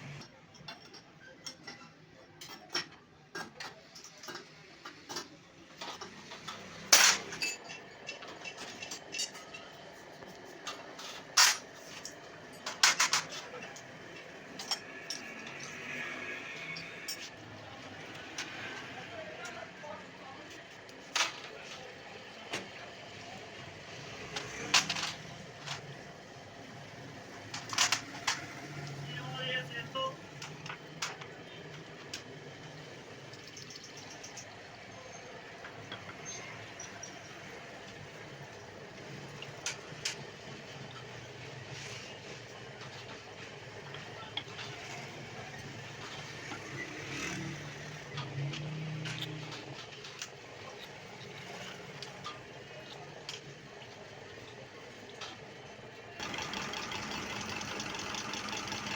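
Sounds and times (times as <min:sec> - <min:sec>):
low workshop noise: 0:00.0 - 0:58.9
engine humming: 0:56.2 - 0:58.9.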